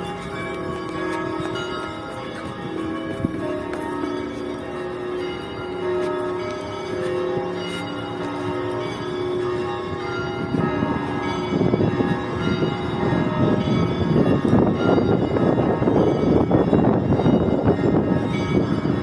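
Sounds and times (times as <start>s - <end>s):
church bells ringing: 0.0s - 19.0s.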